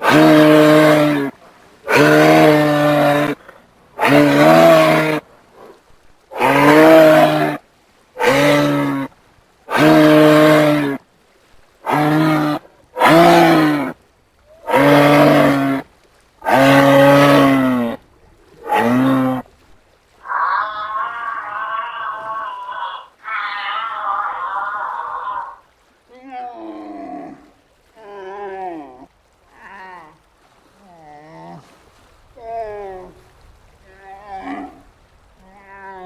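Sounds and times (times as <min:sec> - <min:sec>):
animal mooing: 0:00.0 - 0:01.3, 0:01.9 - 0:05.2, 0:06.3 - 0:07.6, 0:08.2 - 0:09.1, 0:09.7 - 0:11.0, 0:11.8 - 0:13.9, 0:14.6 - 0:15.8, 0:16.4 - 0:18.0, 0:18.6 - 0:19.4, 0:20.2 - 0:25.6.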